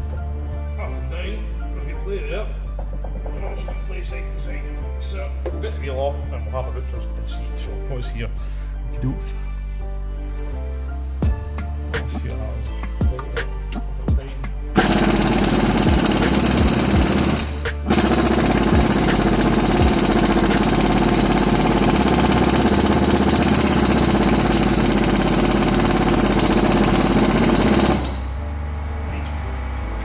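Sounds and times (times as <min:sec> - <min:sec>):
pneumatic air tool hammering: 0:11.2 - 0:28.4.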